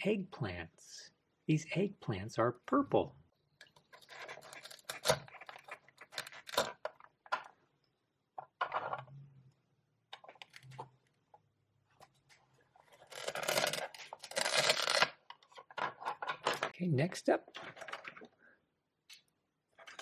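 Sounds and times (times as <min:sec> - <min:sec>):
velcro ripping apart: 0:13.0 - 0:15.2.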